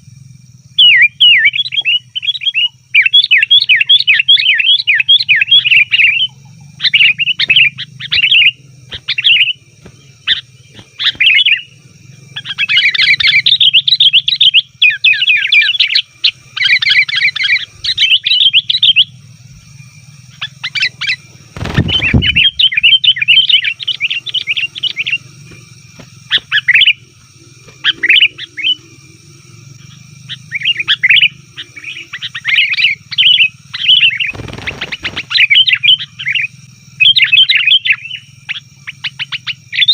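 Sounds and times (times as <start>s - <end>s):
bulbuls chattering: 0.0s - 39.9s
loud thud: 21.6s - 22.7s.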